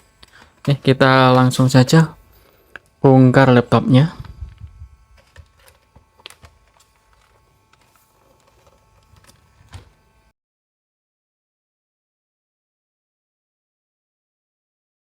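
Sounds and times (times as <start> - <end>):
faint steady hum: 0.0 - 10.3
laptop being handled clicks: 4.2 - 10.0.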